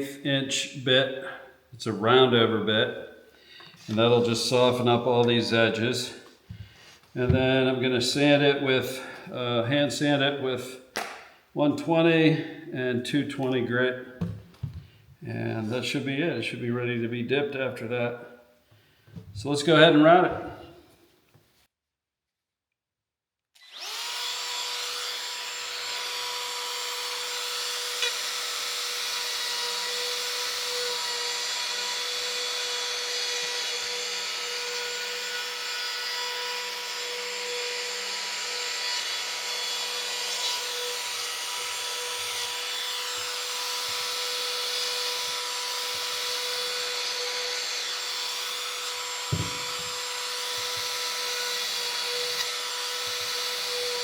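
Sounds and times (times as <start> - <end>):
router cutting wood with high whine: 23.6 - 54.0.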